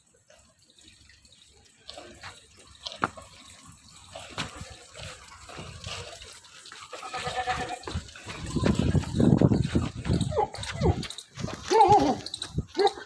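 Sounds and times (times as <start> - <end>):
goats moving about: 0.0 - 13.0
goat bleating: 6.9 - 8.0.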